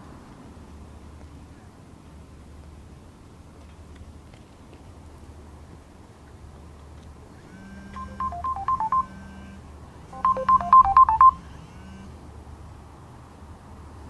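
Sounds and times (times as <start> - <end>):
phone ringtone beeping melody: 8.0 - 9.2, 10.2 - 11.4.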